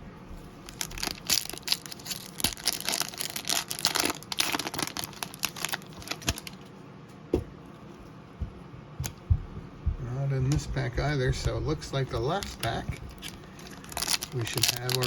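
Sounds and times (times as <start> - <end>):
card pack wrapper tearing and crinkling: 0.6 - 6.6, 12.3 - 15.0.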